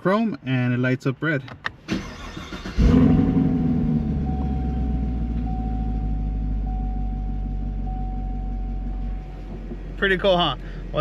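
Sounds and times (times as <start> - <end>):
car engine idling: 1.9 - 11.0
faint steady high tone: 4.1 - 9.2.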